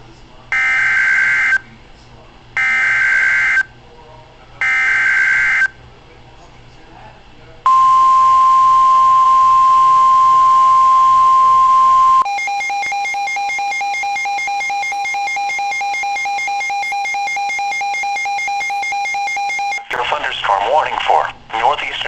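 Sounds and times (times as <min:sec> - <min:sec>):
lower steady alert tone: 0:07.7 - 0:19.9
steady single-pitched alarm tone: 0:07.7 - 0:20.0.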